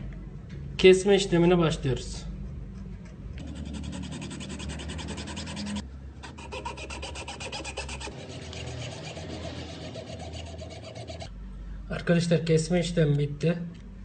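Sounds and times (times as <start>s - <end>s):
hacksaw cutting steel: 3.8s - 11.3s.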